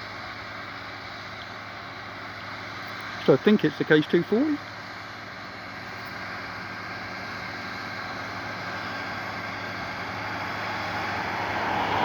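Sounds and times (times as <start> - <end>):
tractor diesel engine under load: 0.0 - 12.0.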